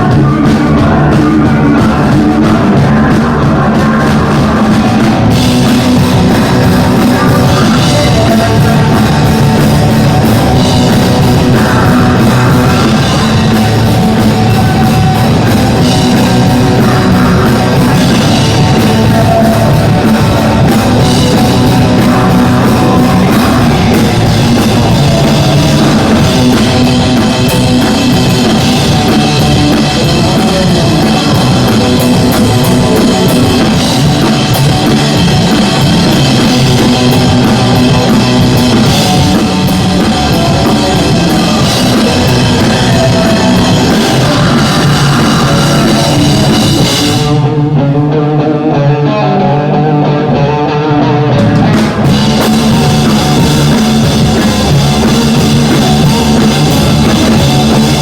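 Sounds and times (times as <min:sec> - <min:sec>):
live rock band playing: 0:00.0 - 0:58.0.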